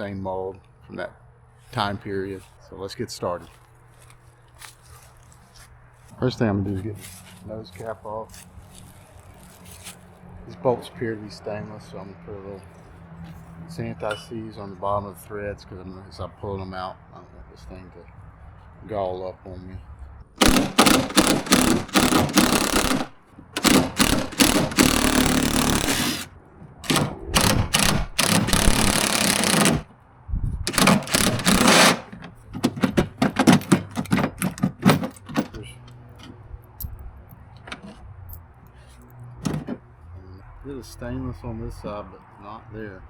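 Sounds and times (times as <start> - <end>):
impact driver hammering: 20.4 - 29.9, 30.7 - 35.4.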